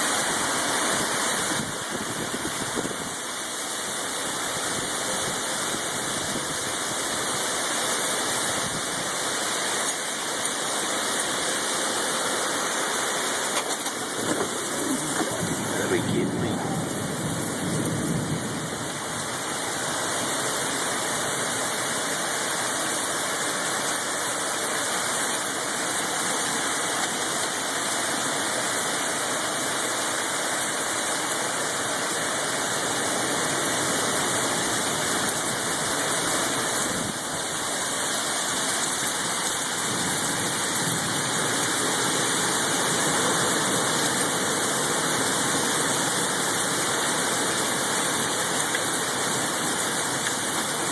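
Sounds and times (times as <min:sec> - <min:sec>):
storm wind rushing: 0:14.0 - 0:19.2.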